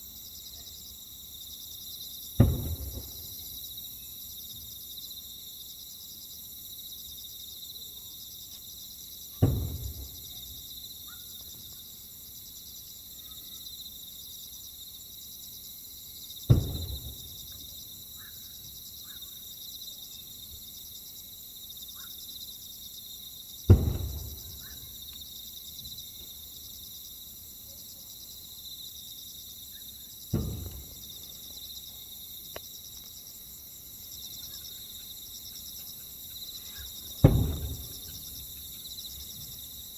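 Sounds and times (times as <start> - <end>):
insects chirring: 0.0 - 39.9
firework shells booming: 2.4 - 3.7, 9.4 - 10.7, 16.5 - 17.8, 23.7 - 25.0, 30.3 - 31.5, 36.8 - 38.8.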